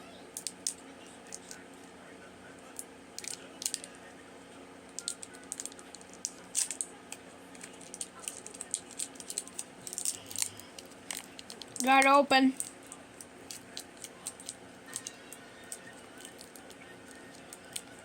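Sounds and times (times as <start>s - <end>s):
faint hum: 0.0s - 18.0s
candy package crinkling: 2.8s - 4.0s, 4.9s - 18.0s.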